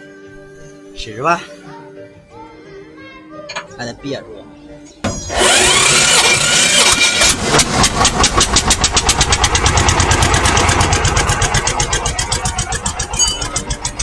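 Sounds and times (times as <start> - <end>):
diesel engine starting and running: 5.0 - 14.0.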